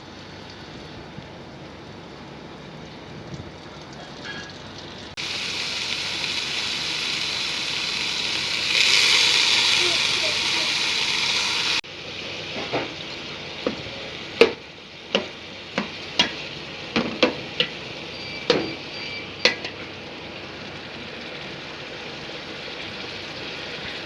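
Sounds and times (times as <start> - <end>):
food sizzling in hot oil: 4.8 - 24.0.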